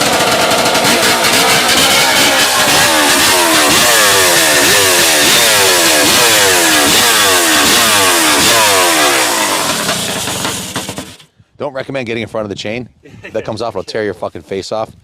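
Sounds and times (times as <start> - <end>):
chainsaw engine revving: 0.0 - 11.3.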